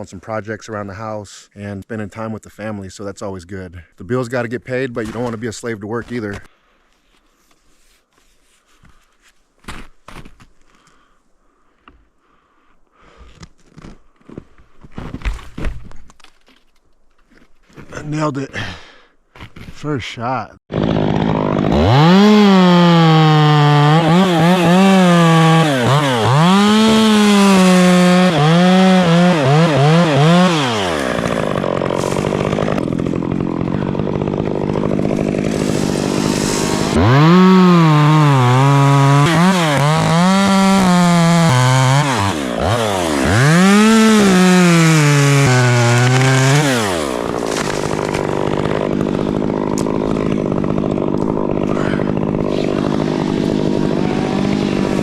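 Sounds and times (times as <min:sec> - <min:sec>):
chainsaw revving: 0:20.7 - 0:55.0.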